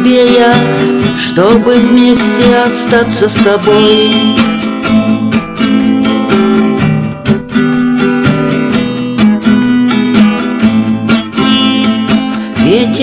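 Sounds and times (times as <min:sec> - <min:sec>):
person singing: 0:00.0 - 0:04.8, 0:12.0 - 0:13.0
strummed acoustic guitar: 0:00.0 - 0:13.0.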